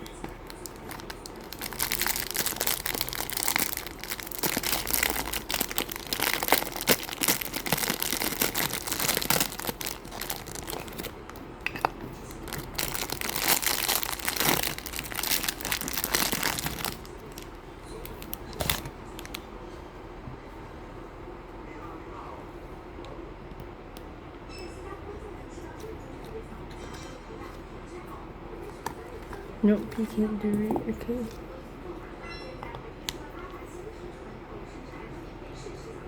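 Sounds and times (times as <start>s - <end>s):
plastic packaging crinkling: 0.0s - 19.4s
plastic tearing: 0.0s - 19.4s.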